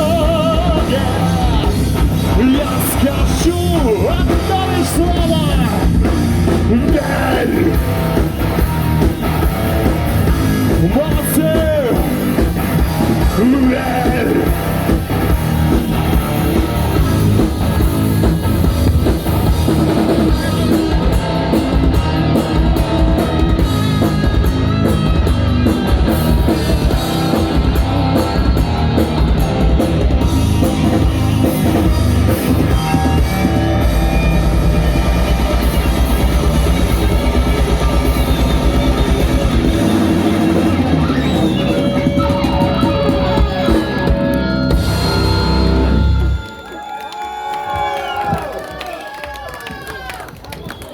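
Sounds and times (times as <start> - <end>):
drum kit: 0.0 - 46.4
bass guitar: 0.0 - 46.6
electric guitars: 0.0 - 46.7.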